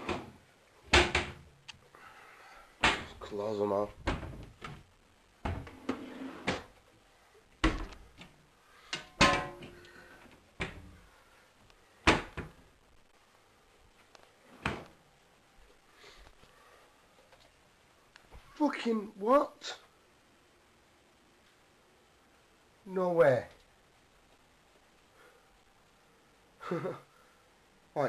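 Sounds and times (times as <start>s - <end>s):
cupboard doors and drawers shutting: 0.0s - 1.4s, 5.4s - 6.8s, 14.5s - 14.9s.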